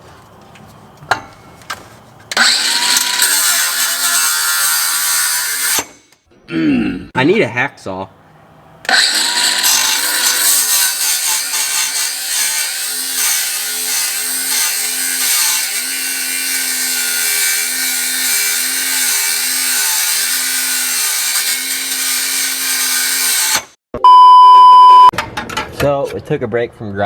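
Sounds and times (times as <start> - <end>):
angle grinder cutting metal pipe: 2.3 - 6.1, 8.9 - 23.8.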